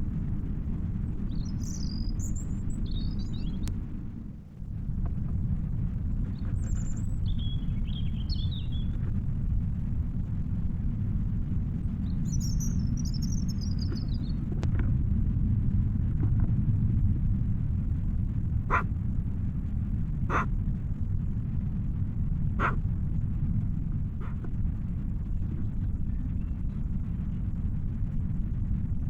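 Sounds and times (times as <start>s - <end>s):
low outdoor rumble: 0.0s - 29.0s
songbird singing: 1.0s - 3.7s, 6.2s - 9.2s, 11.7s - 14.5s, 22.6s - 22.8s
short animal calls or barks: 18.7s - 18.9s, 20.3s - 20.5s, 22.6s - 22.8s, 24.2s - 24.4s.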